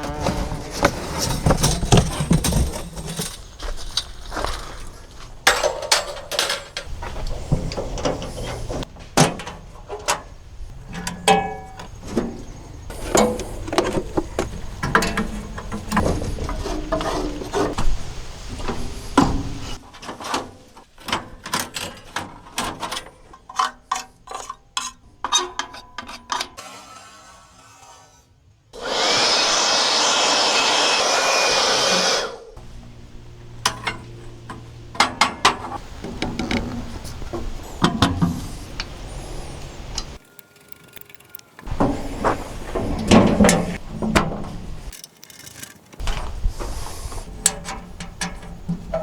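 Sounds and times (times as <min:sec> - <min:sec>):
knocks and metallic clanks: 0:00.0 - 0:04.7, 0:32.6 - 0:38.9, 0:40.0 - 0:46.3.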